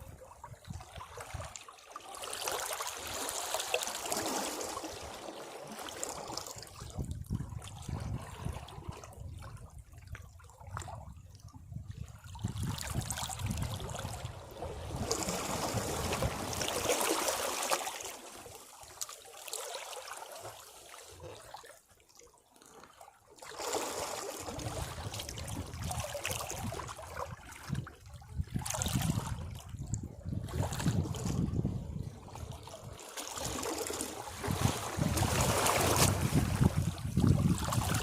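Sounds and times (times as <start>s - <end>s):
sea waves washing over rocks: 14.4s - 18.5s, 33.3s - 38.0s.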